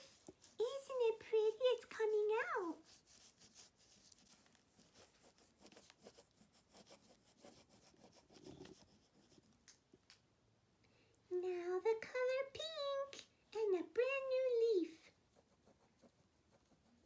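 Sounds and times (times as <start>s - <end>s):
crayon scratching on paper: 0.0s - 9.6s, 15.1s - 17.0s.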